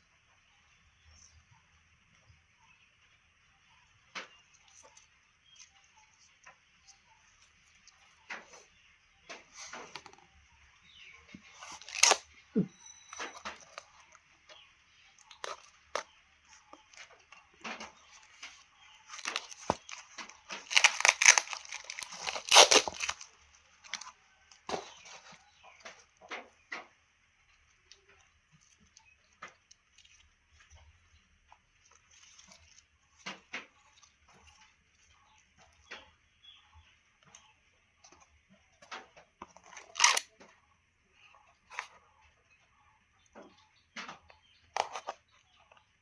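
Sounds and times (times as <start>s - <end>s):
plastic packaging tearing: 11.6s - 12.2s, 19.0s - 24.1s, 39.7s - 40.3s.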